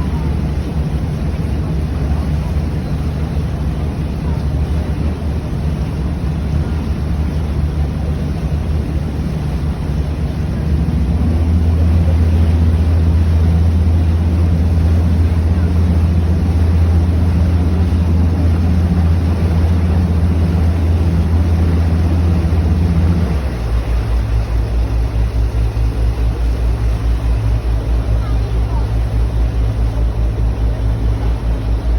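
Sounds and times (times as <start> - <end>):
boat engine humming: 0.0 - 31.9.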